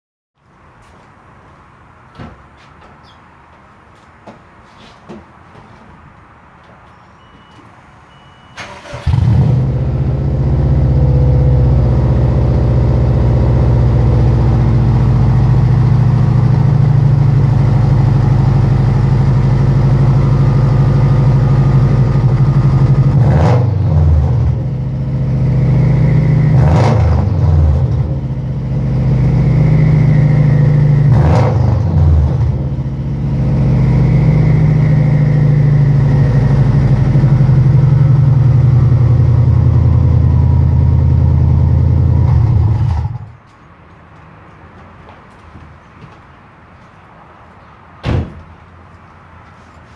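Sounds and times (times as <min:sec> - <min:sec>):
car engine starting and running: 0:08.6 - 0:43.4.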